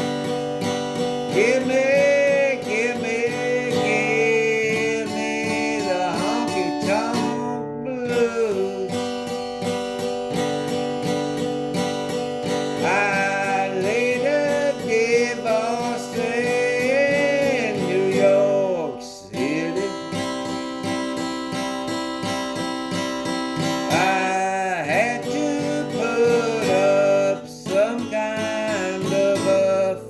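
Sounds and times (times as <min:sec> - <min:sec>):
sliding guitar melody: 0:00.0 - 0:30.0
strummed acoustic guitar: 0:00.0 - 0:30.0.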